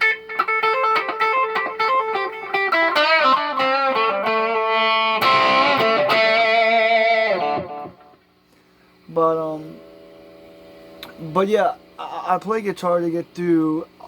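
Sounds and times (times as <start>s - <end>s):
electric guitar lead lick: 0.0s - 8.4s.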